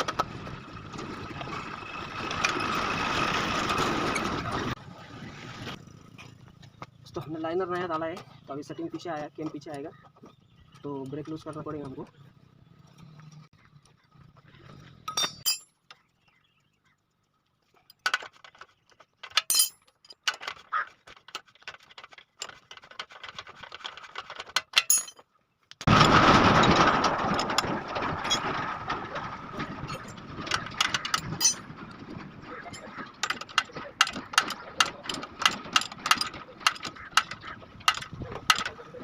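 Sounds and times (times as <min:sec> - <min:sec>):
metal tools clinking: 0:15.0 - 0:15.9, 0:17.8 - 0:25.2, 0:26.7 - 0:31.8, 0:32.4 - 0:38.8.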